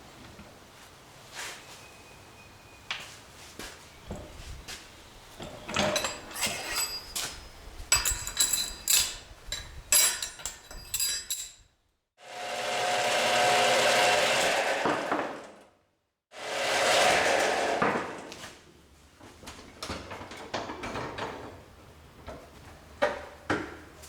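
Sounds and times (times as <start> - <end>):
metal tools clinking: 5.4 - 11.7
power tool running: 12.2 - 15.5, 16.4 - 17.9.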